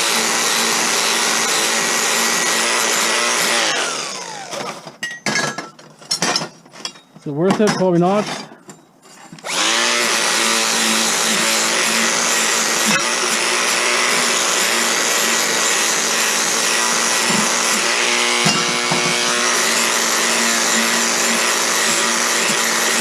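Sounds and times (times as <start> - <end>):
electric grinder on metal: 0.0 - 4.7, 9.4 - 23.0.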